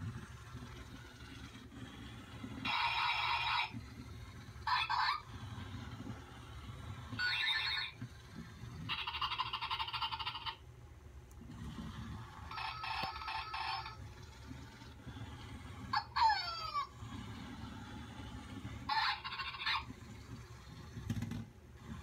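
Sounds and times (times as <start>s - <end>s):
toy electronic sound bursts: 8.9s - 10.6s.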